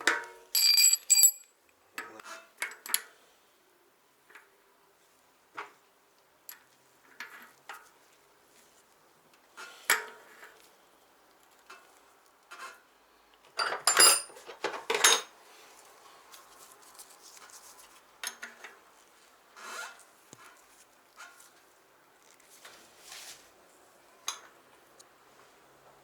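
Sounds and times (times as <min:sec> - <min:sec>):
metal tools clicking on workbench: 0:00.6 - 0:01.5
ringing metal clinks: 0:00.6 - 0:01.5.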